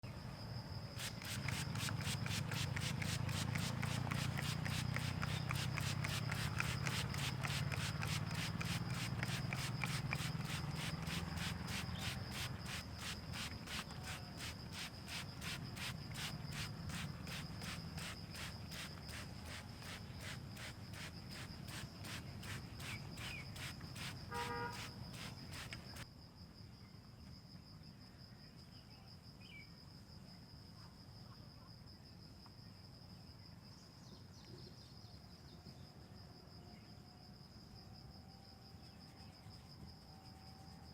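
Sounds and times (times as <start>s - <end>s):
insects chirping: 0.0s - 40.9s
hands rubbing hair and scalp: 1.0s - 26.0s.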